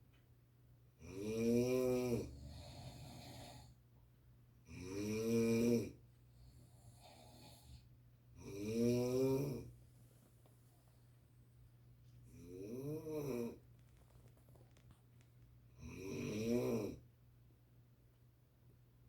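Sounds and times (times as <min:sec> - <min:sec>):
person snoring: 0:01.0 - 0:03.8, 0:04.7 - 0:06.0, 0:08.4 - 0:09.7, 0:12.3 - 0:13.6, 0:15.8 - 0:17.0
quiet breath: 0:02.2 - 0:03.9, 0:06.2 - 0:08.1.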